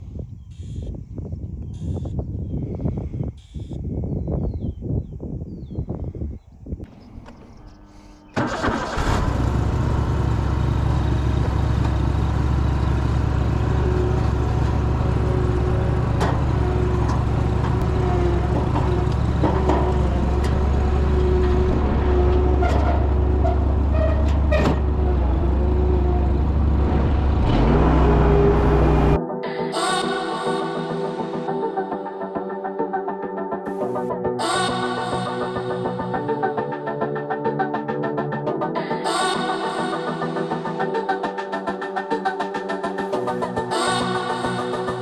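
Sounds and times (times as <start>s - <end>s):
mower engine droning: 6.9s - 29.2s.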